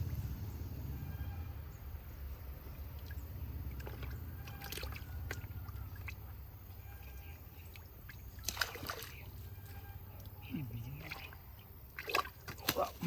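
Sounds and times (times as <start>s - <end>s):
low steady rumble: 0.0s - 12.5s
pond water splashing and trickling: 1.5s - 13.0s
loud splash: 8.4s - 9.2s.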